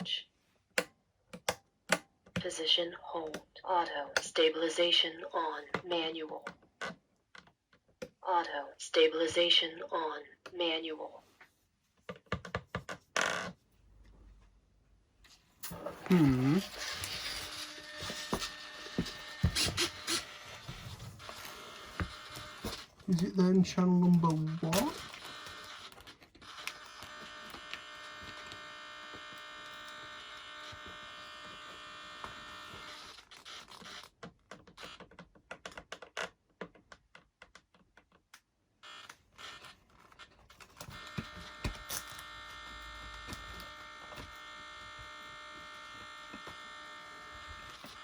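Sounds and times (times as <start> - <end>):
electrical buzz with high whine: 41.0 - 48.0.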